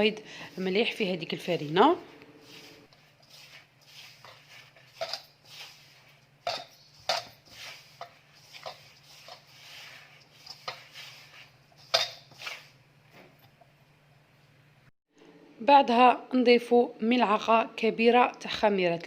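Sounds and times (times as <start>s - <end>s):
soft scraping and rustling: 0.6s - 13.6s.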